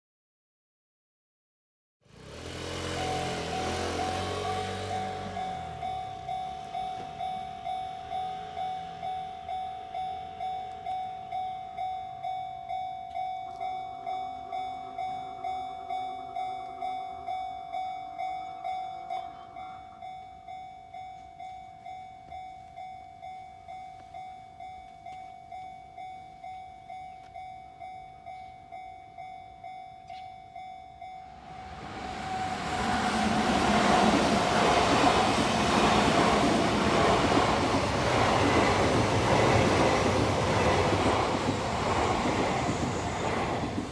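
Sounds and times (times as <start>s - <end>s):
train rushing past: 2.1s - 11.1s, 31.2s - 43.9s
crossing warning bell ringing: 2.4s - 43.9s.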